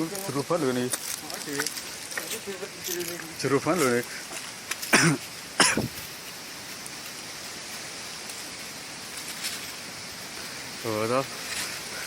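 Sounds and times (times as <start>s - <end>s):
steady background hiss: 0.0s - 12.0s
person coughing: 4.9s - 5.9s.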